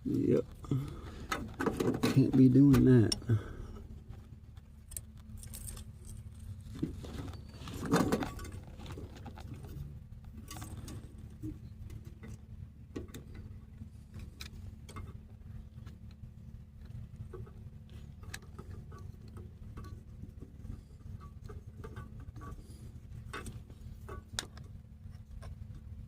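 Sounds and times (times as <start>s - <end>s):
steady low hum: 0.0s - 26.0s
metal parts clicking and rattling: 4.8s - 9.8s, 10.4s - 11.2s.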